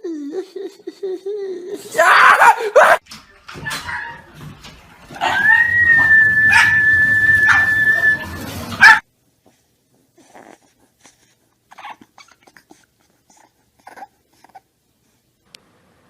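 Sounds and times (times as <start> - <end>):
dog whining: 5.2 - 9.0, 10.2 - 14.7.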